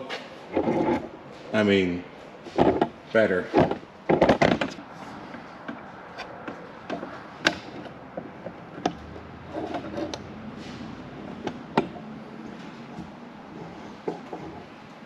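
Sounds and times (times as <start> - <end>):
tools knocking and clicking: 5.6 - 10.2, 11.3 - 12.0.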